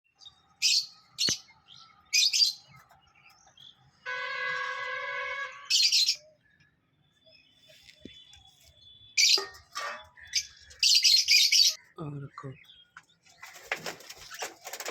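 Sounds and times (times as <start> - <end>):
birds giving shrill chirps: 0.2 - 14.9.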